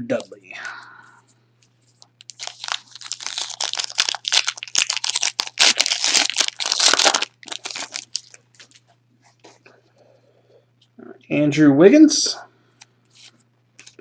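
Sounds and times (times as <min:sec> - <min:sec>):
foil wrapper tearing and crinkling: 0:02.2 - 0:08.8.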